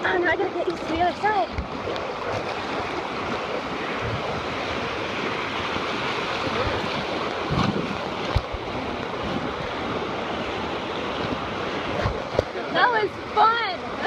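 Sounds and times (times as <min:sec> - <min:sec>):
wind buffeting microphone: 0:00.0 - 0:13.3
river rapids rushing: 0:00.2 - 0:14.0.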